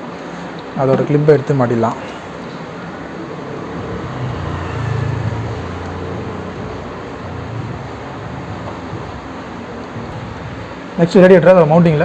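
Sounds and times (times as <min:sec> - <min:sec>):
traffic noise: 0:00.0 - 0:12.0
vehicle engine running: 0:02.2 - 0:11.0.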